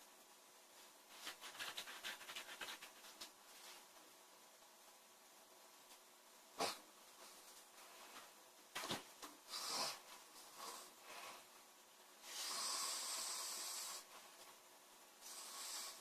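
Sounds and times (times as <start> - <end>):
woman snoring: 12.3 - 14.1.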